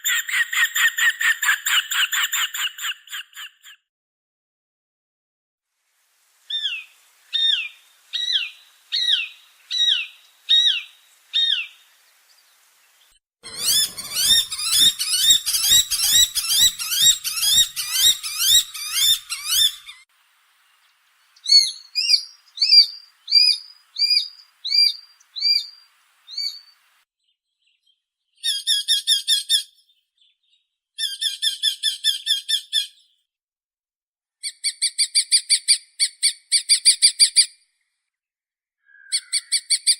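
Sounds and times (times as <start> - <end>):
hawks calling: 13.4 - 20.1, 21.3 - 26.9.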